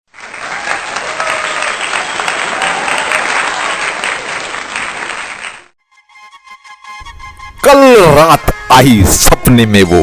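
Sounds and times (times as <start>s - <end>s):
crowd applauding: 0.1s - 5.7s.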